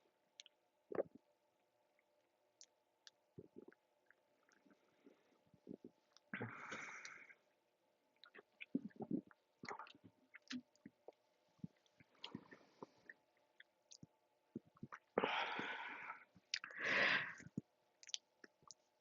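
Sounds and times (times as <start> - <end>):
heavy breaths out: 15.2 - 17.6.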